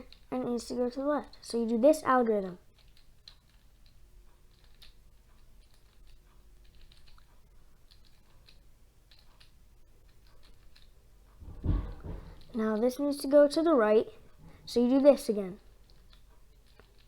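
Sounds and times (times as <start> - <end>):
low bump: 11.4 - 12.6.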